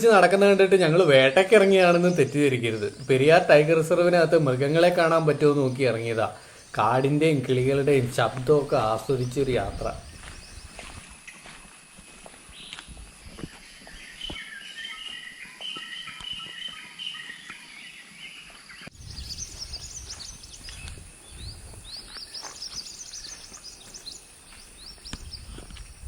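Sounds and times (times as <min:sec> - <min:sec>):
birds singing: 0:00.0 - 0:11.4, 0:12.5 - 0:26.0
high thin bird chirps: 0:13.5 - 0:26.0.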